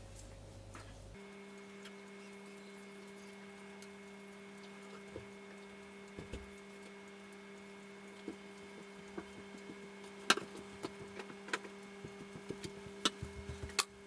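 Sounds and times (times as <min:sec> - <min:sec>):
brush tapping on wood: 0:08.2 - 0:13.8.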